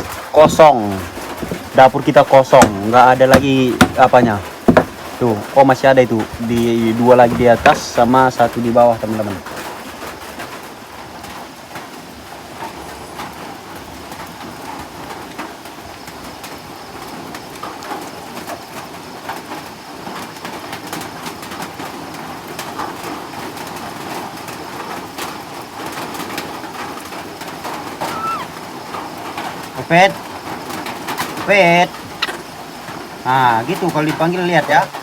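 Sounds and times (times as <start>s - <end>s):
steady rain: 0.0s - 35.0s
rising bird call: 28.0s - 28.6s.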